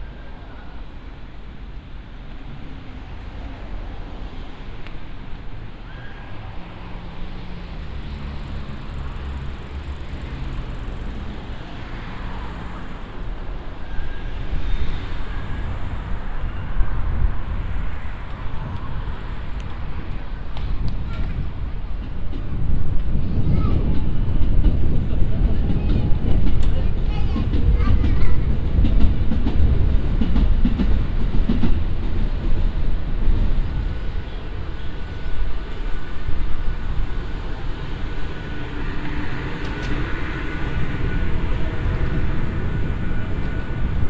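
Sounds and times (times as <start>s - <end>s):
road traffic rumble: 0.3s - 44.0s.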